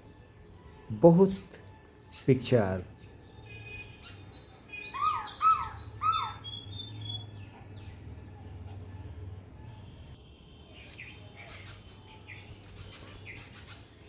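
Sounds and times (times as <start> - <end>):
loud arched bird notes: 2.1 - 10.1
thin high whistled bird notes: 3.4 - 8.0.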